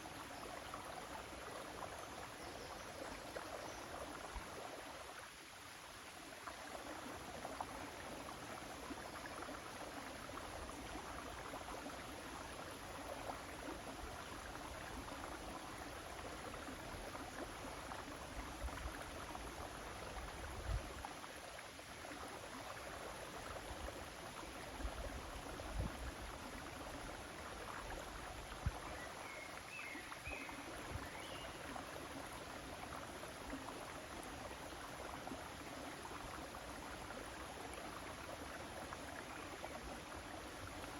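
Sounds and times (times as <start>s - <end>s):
river water running: 0.0s - 40.9s.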